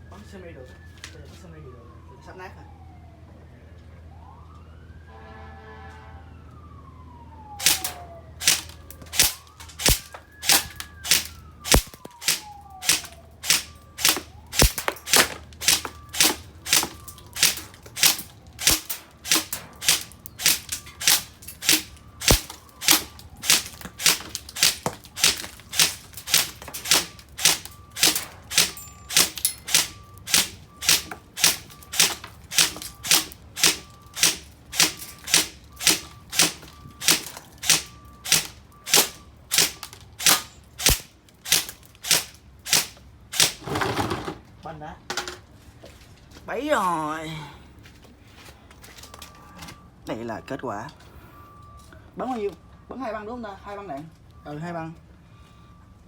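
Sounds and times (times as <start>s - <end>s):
siren rising and falling: 0.0s - 40.9s.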